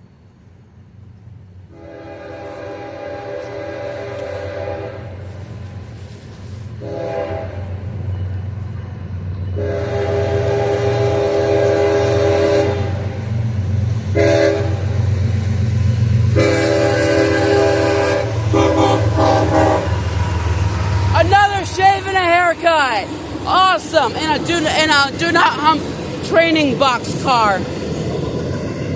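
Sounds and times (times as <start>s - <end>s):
train rumbling: 0.0s - 28.9s
locomotive air horn chords: 1.7s - 5.6s, 6.8s - 7.8s, 9.6s - 13.1s, 14.1s - 15.0s, 16.3s - 22.2s.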